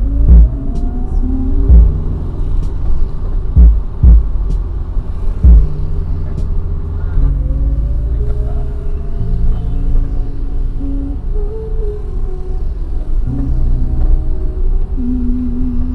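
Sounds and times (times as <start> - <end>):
heavy low thumps: 0.0 - 8.5
car engine rumble: 0.0 - 15.9.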